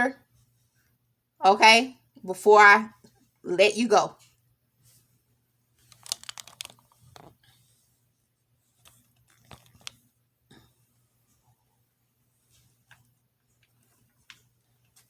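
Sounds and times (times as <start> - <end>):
paper rustling and crinkling: 5.8 - 7.9.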